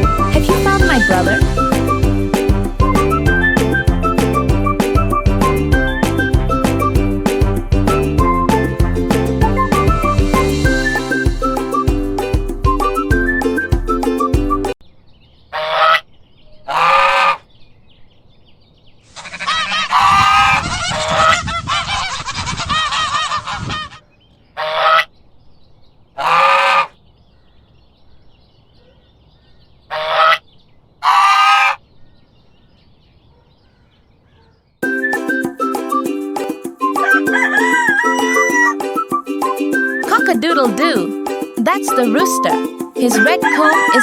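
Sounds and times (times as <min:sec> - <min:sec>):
geese honking: 0:15.5 - 0:17.5, 0:19.1 - 0:24.0, 0:24.6 - 0:25.1, 0:26.2 - 0:27.0, 0:29.9 - 0:30.4, 0:31.0 - 0:31.8, 0:37.0 - 0:38.9, 0:43.0 - 0:44.0.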